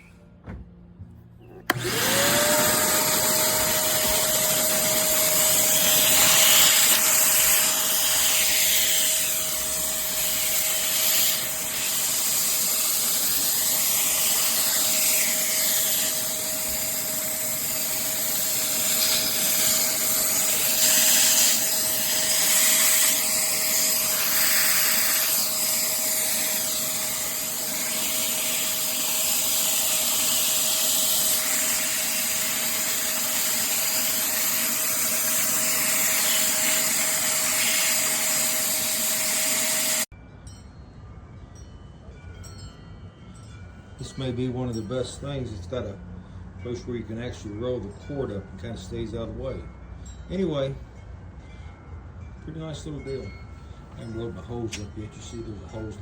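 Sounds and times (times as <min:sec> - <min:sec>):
shop vacuum running: 0:01.4 - 0:40.1.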